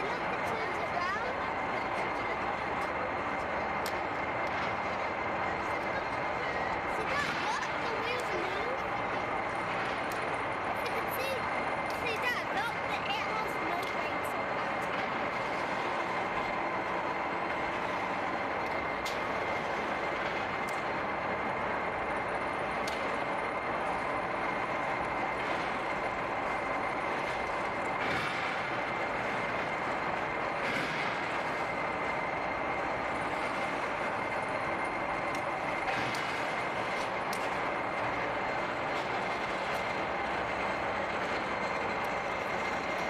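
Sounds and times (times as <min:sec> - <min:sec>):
railway turntable motor whining: 0:00.0 - 0:43.0
sharp mechanical clicks: 0:35.2 - 0:38.3.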